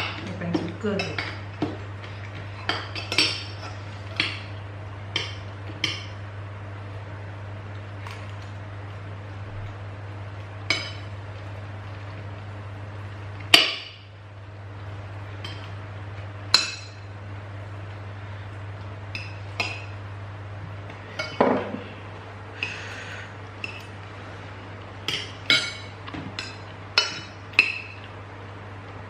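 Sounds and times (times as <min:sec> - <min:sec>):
steady low hum: 0:00.0 - 0:29.0
cutlery clinking against plates: 0:23.6 - 0:23.9, 0:25.1 - 0:28.1.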